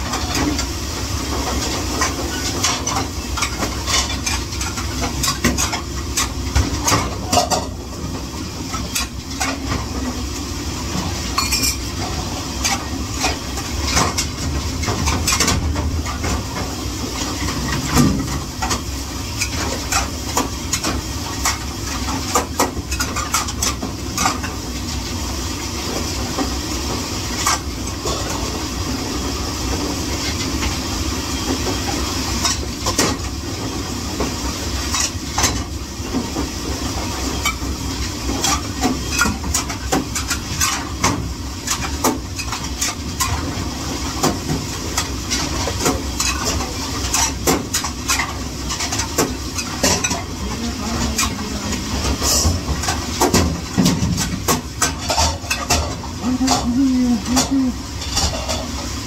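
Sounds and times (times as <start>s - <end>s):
dishes and utensils clattering: 1.4s - 7.8s, 11.3s - 16.4s, 45.3s - 59.0s.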